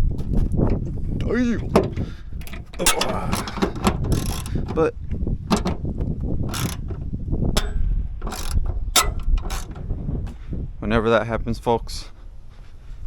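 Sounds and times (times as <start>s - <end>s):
socket ratchet clicking: 0.6s - 10.4s.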